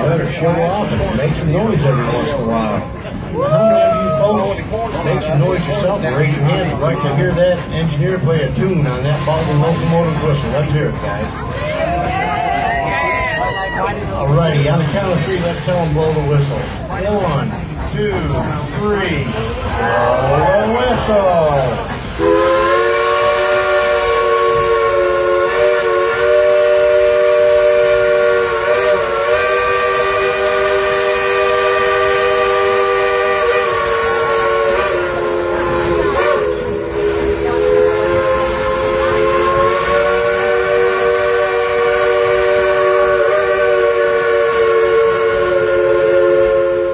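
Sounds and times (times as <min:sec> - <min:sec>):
steam locomotive chime whistle: 0:22.2 - 0:46.9.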